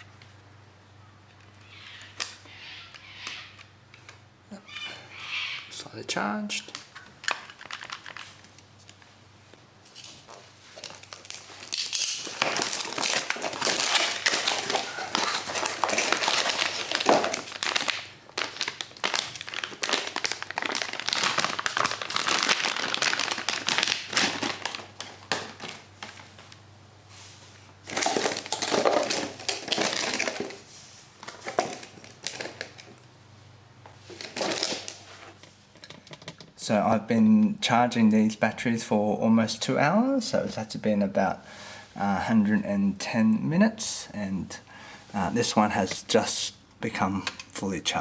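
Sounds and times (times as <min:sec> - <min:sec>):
packaging crinkling and rustling: 0:06.6 - 0:09.1, 0:09.9 - 0:33.1, 0:33.8 - 0:35.5.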